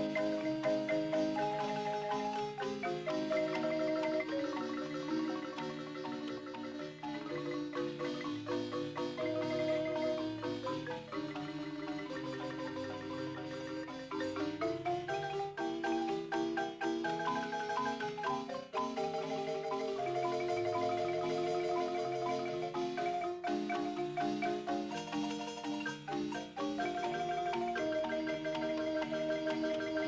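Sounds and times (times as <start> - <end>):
instrumental folk music: 0.0 - 30.0.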